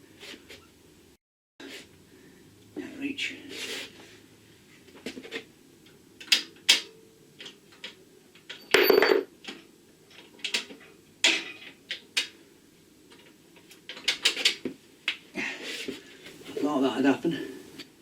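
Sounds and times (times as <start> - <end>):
metal clinks of bolts and tools: 8.6 - 9.3.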